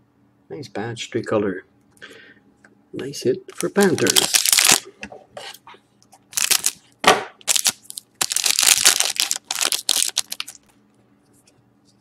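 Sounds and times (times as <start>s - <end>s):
cards and packaging rustling: 3.5s - 4.9s, 6.3s - 6.8s, 7.5s - 10.7s.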